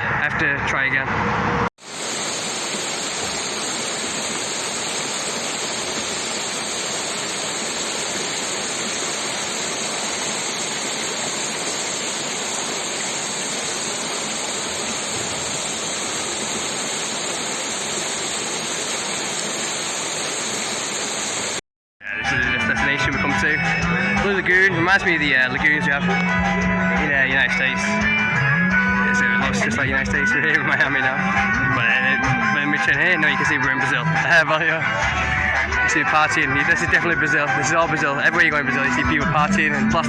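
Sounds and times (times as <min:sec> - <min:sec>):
water rushing: 0:01.8 - 0:21.6, 0:29.0 - 0:40.0.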